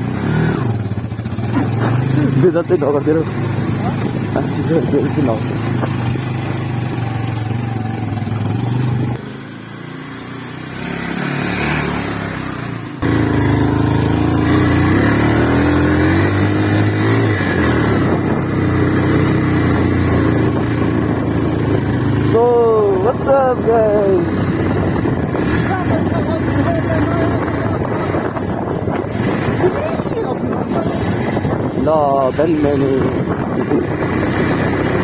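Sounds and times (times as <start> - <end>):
motorcycle engine running: 0.0 - 35.0
road and wind noise: 0.0 - 35.0.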